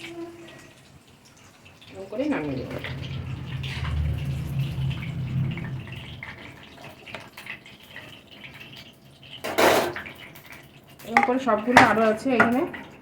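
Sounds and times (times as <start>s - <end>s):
food deep-frying in hot oil: 0.0s - 13.0s
low hum: 2.0s - 7.1s.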